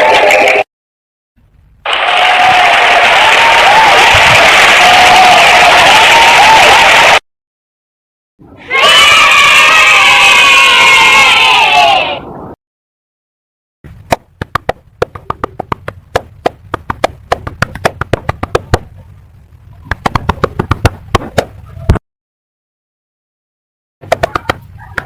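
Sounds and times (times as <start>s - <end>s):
crowd cheering: 0.0s - 0.7s, 1.8s - 7.2s, 8.6s - 12.4s, 24.1s - 25.0s
hands clapping: 14.1s - 18.9s, 19.9s - 21.5s, 24.0s - 25.0s.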